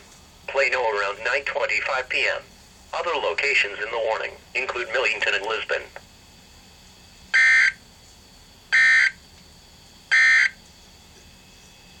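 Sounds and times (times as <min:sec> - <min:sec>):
high-pitched buzzing data bursts: 0:07.4 - 0:07.8, 0:08.7 - 0:09.2, 0:10.1 - 0:10.6.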